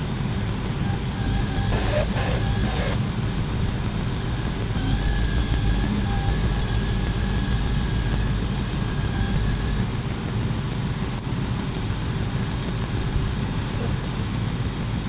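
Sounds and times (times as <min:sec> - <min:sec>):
high-pitched whine: 0:00.0 - 0:15.0
heavy machinery engine running: 0:00.1 - 0:15.0
mid-pitched tone: 0:01.4 - 0:03.0.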